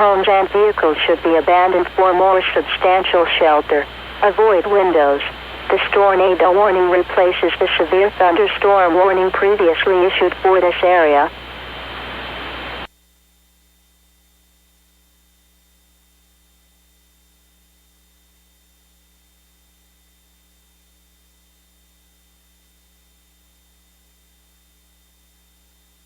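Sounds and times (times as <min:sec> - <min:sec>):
broadcast static hiss: 0:00.0 - 0:12.9
faint electrical hum: 0:00.0 - 0:26.0.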